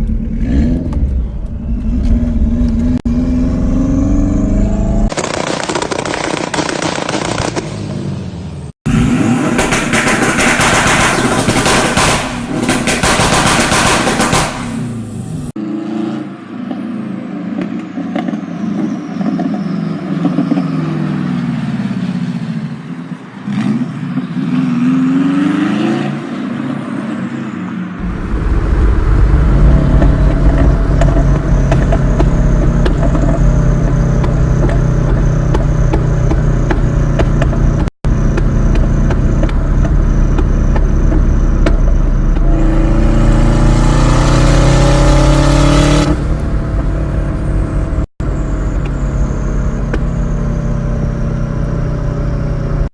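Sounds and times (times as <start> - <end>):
exhaust pops and backfires: 5.0 - 8.0, 8.9 - 15.6, 28.0 - 50.4
low engine drone: 28.0 - 50.0
car engine revving: 28.0 - 52.9.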